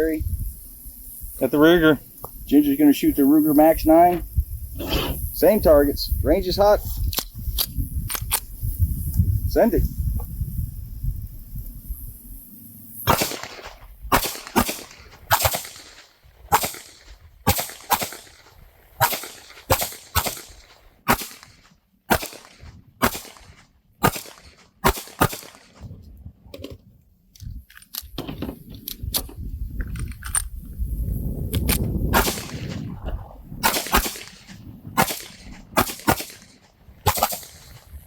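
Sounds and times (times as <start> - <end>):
pistol shots: 13.1 - 25.8, 32.1 - 32.9, 33.6 - 37.8.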